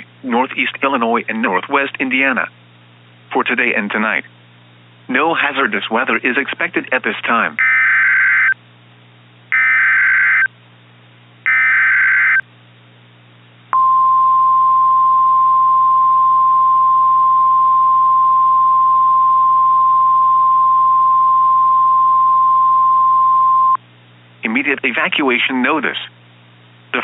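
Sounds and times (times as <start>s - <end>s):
faint low hum: 0.0s - 27.0s
steady warning alarm tone: 7.6s - 8.6s, 9.5s - 10.5s, 11.4s - 12.4s
harsh digital screech: 9.6s - 10.5s, 11.5s - 12.4s.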